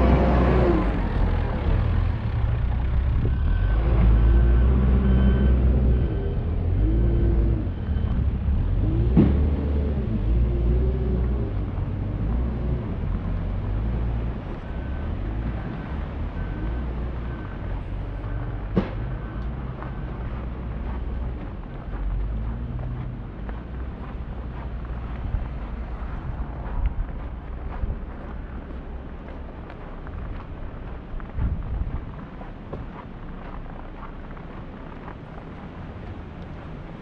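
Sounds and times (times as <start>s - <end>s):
heavy vehicle engine running: 0.0s - 37.0s
reversing alarm beeping: 0.1s - 11.6s, 12.8s - 22.8s.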